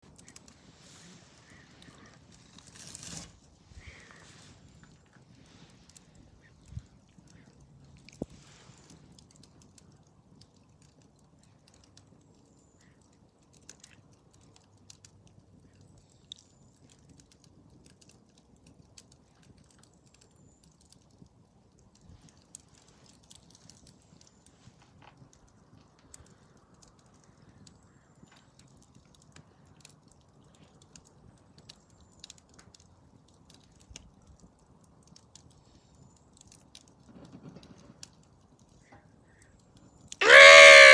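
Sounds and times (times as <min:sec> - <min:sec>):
fire crackling and popping: 0:00.0 - 0:40.9
rustle: 0:00.0 - 0:40.9.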